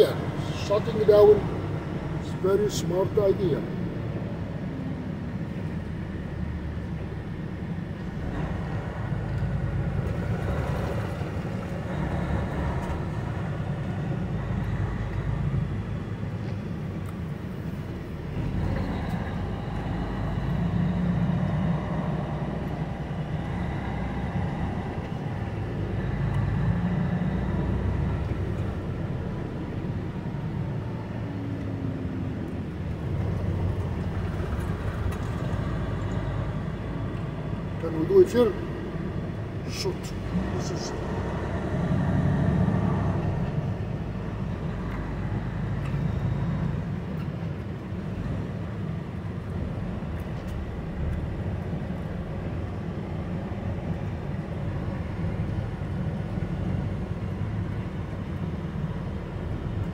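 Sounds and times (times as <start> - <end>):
road noise: 0.0 - 59.9
truck diesel engine rumbling: 0.0 - 59.9.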